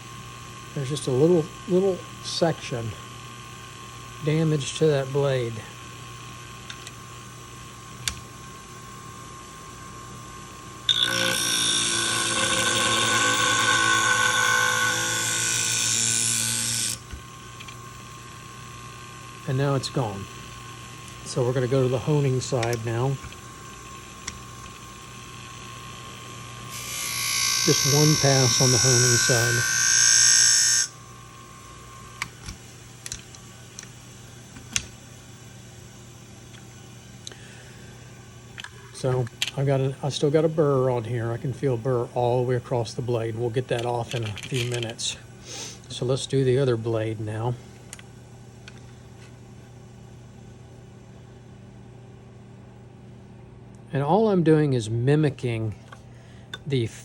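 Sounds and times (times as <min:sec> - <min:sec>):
motor hum: 0:00.0 - 0:46.2
blade grinding on abrasive wheel: 0:10.9 - 0:17.0, 0:26.7 - 0:30.9.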